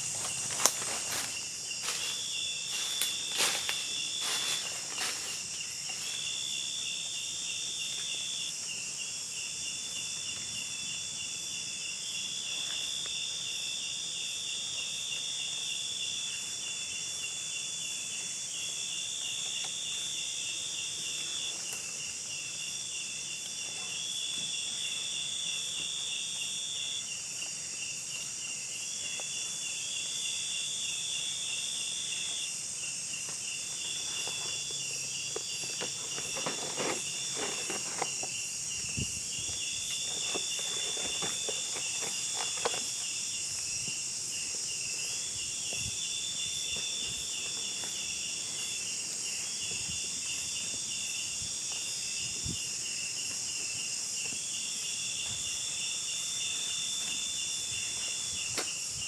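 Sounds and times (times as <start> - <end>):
high buzzing insect tone: 0.0 - 10.2
insects pulsing trill: 0.0 - 59.0.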